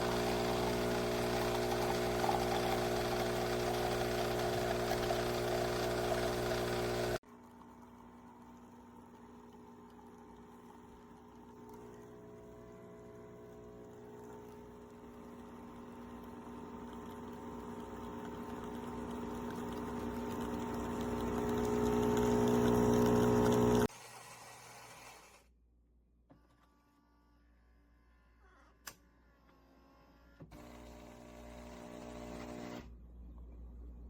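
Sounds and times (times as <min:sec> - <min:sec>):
espresso machine pump humming: 0:00.0 - 0:23.9, 0:30.6 - 0:32.9.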